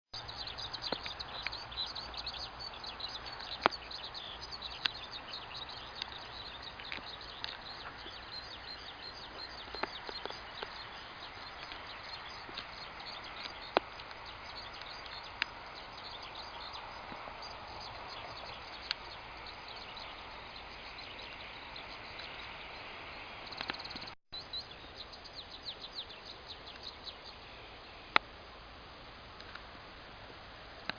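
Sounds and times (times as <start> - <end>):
skylark singing: 0.2 - 27.7.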